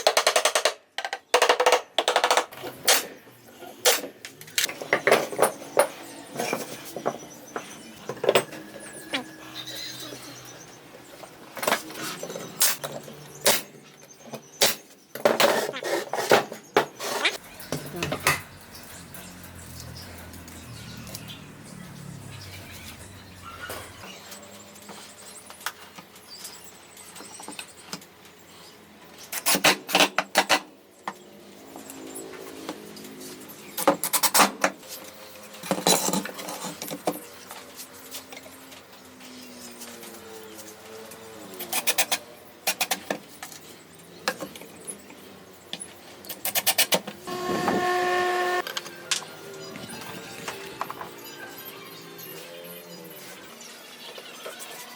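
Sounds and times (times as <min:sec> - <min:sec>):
small power tool running: 0:47.3 - 0:48.6.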